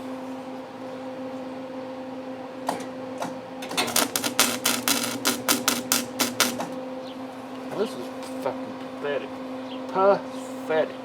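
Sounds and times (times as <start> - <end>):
welder arc crackling: 3.7 - 6.7
steady hum: 3.8 - 6.8.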